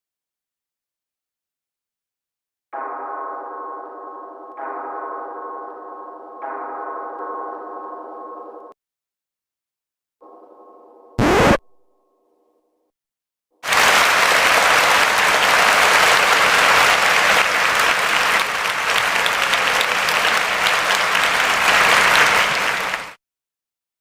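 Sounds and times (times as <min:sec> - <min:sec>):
crowd clapping: 0:13.6 - 0:23.2.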